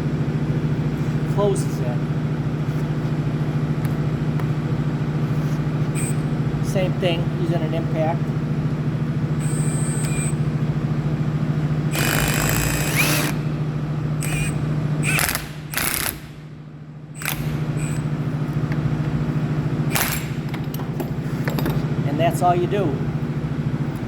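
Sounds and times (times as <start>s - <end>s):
steady low hum: 0.0s - 24.0s
impact wrench hammering: 11.9s - 13.5s, 14.2s - 16.4s, 19.9s - 21.8s.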